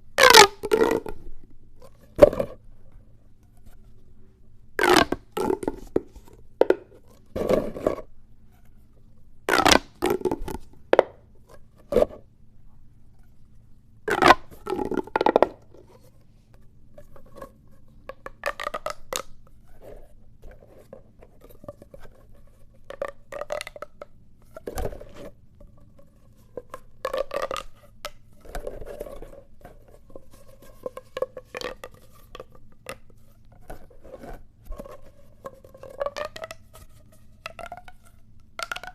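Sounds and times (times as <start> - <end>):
plastic pop tubes crackling: 0.2 - 1.3, 4.8 - 7.9, 9.5 - 11.2, 14.1 - 15.8, 18.0 - 19.5, 22.8 - 25.2, 26.6 - 29.8, 30.6 - 33.9, 34.8 - 38.9.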